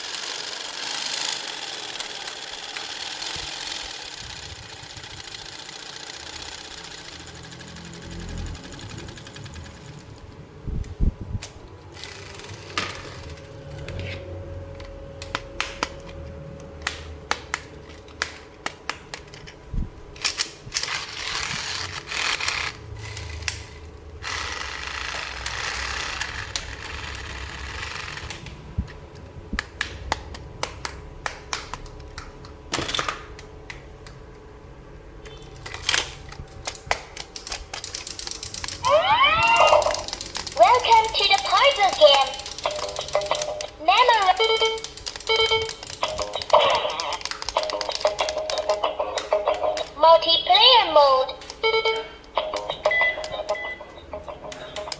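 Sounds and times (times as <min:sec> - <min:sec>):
plastic toy pieces clicking: 0:35.6 - 0:50.0, 0:54.5 - 0:54.9.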